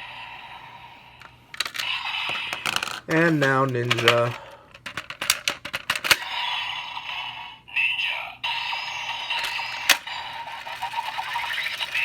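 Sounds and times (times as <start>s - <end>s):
toy gun electronic sound effects: 8.5s - 12.0s.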